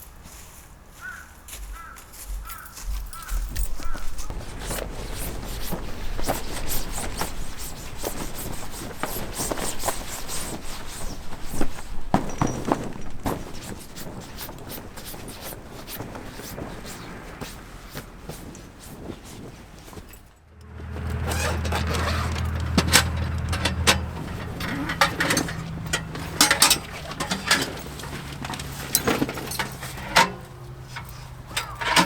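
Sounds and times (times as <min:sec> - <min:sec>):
close crunching and rustling: 0:00.0 - 0:32.0
crow cawing: 0:01.0 - 0:04.2.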